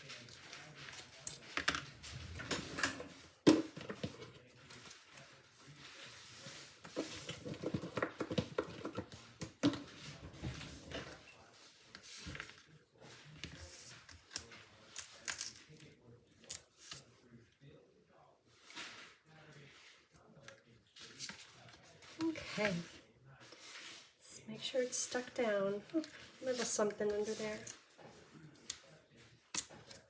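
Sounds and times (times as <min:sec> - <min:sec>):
paper rustling and tapping: 0:06.9 - 0:11.0.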